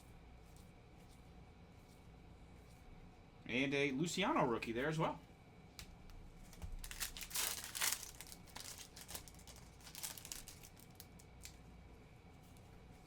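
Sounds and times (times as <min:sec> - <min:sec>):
cards rustling: 0:06.5 - 0:11.6.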